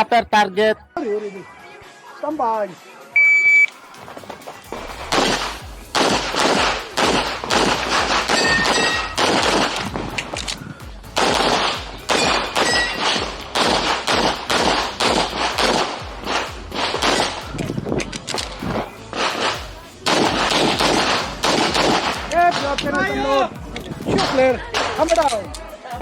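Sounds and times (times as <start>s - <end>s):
background music with steady beat: 0.0s - 26.0s
pistol shots: 4.8s - 10.6s, 11.2s - 23.1s
steel plates ringing: 8.3s - 9.2s, 12.1s - 13.2s.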